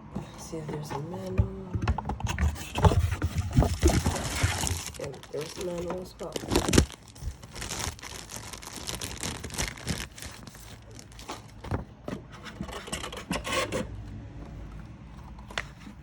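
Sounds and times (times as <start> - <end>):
paper rustling and crinkling: 2.4 - 12.0.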